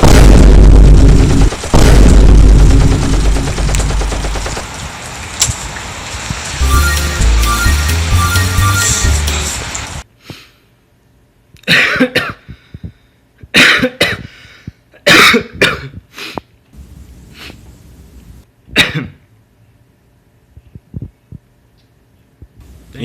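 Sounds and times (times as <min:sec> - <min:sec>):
person coughing hard: 0:11.6 - 0:12.5, 0:13.5 - 0:14.3, 0:15.0 - 0:16.0, 0:18.8 - 0:19.2.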